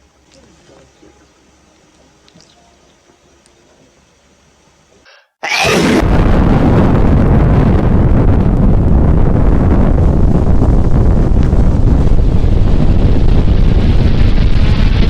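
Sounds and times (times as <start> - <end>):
loud explosion rumbling rush: 5.5 - 15.0.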